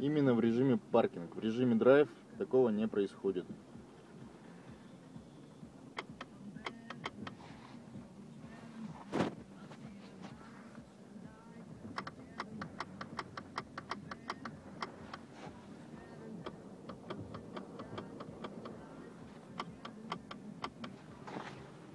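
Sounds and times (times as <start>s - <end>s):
gear selector latch clicking: 5.9s - 7.4s, 11.8s - 15.3s, 16.4s - 18.8s, 19.5s - 21.6s.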